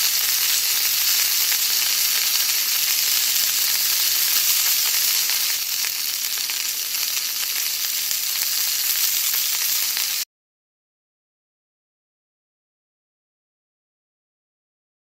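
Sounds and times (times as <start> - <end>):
food sizzling on a grill: 0.0 - 10.3.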